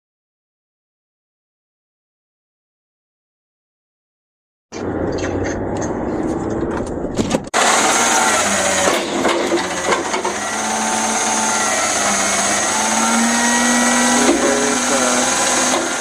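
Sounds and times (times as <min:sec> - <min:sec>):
garbage truck mechanical whine: 0:04.7 - 0:16.0.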